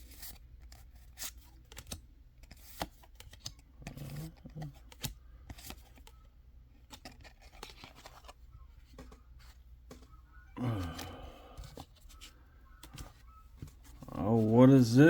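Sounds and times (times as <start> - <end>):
trading cards being handled: 0.0 - 15.0
person murmuring: 10.5 - 11.8, 14.1 - 15.0.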